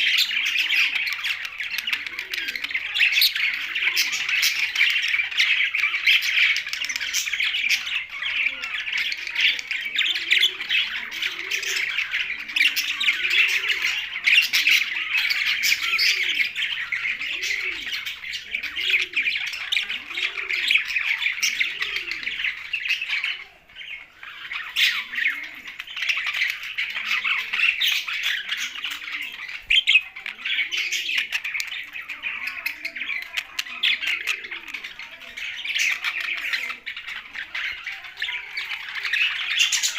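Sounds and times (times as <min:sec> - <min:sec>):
parrots chattering and squawking: 0:00.0 - 0:39.9.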